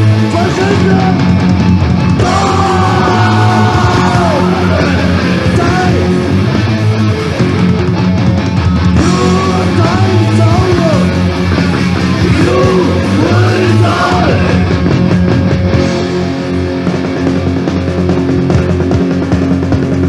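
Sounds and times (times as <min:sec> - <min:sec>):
punk rock song: 0:00.0 - 0:20.0
shouted vocals: 0:00.3 - 0:01.2, 0:02.2 - 0:06.4, 0:09.0 - 0:11.2, 0:12.1 - 0:14.7.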